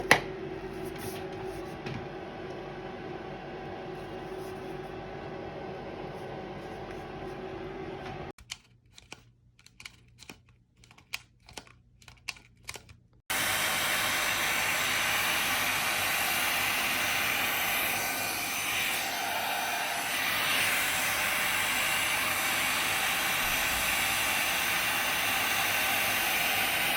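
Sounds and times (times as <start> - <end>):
hot air brush blowing: 13.3 - 26.9.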